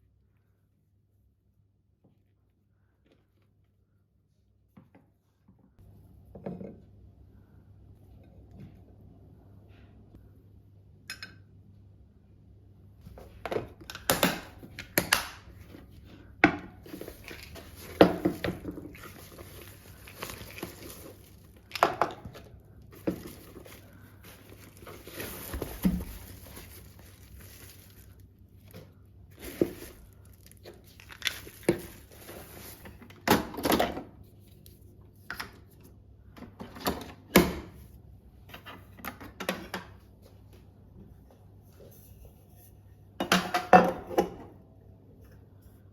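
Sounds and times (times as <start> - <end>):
low steady hum: 5.7 - 33.1
plastic packaging crinkling: 16.9 - 33.0.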